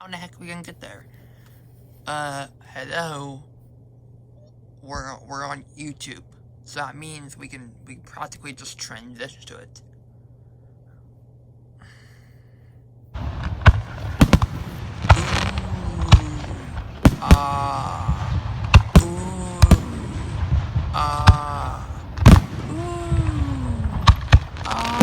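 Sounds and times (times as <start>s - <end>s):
steady rumble: 0.4s - 25.0s
fireworks bangs and crackles: 13.2s - 25.0s.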